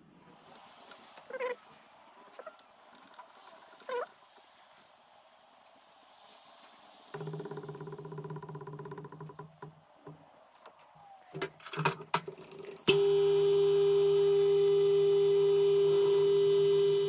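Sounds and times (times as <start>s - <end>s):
electric motor humming: 12.9s - 17.0s.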